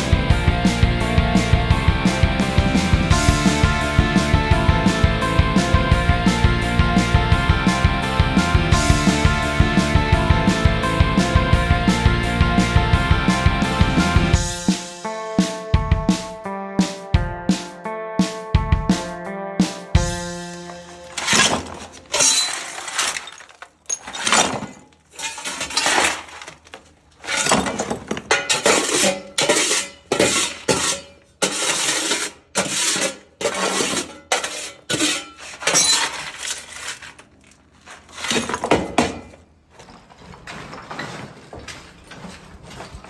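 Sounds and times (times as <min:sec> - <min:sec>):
shards clattering: 0:20.5 - 0:43.0
hammer smashing tiles: 0:20.9 - 0:26.6, 0:27.2 - 0:37.2, 0:38.0 - 0:39.4.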